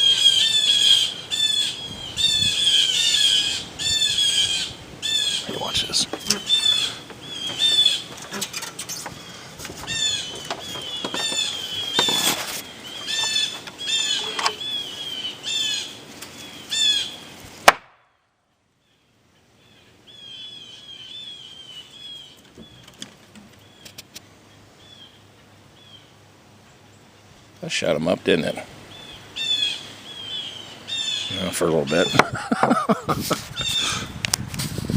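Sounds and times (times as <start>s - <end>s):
blue jays screeching: 0.0s - 17.3s, 29.0s - 32.9s
loud sharp crack: 17.6s - 18.2s.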